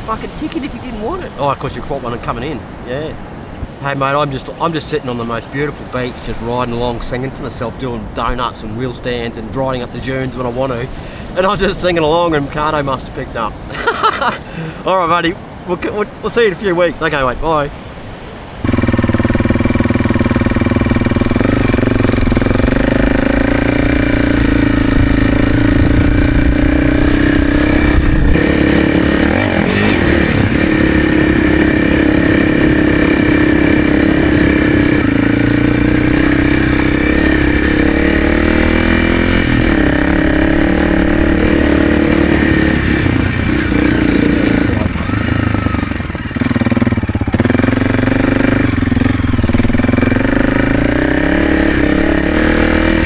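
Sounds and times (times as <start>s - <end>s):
motorcycle engine running: 18.6s - 53.0s.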